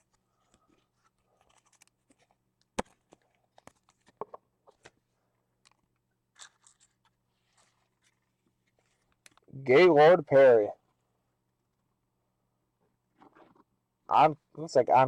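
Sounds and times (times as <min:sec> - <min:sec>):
trading cards rustling and clicking: 0:00.0 - 0:09.5.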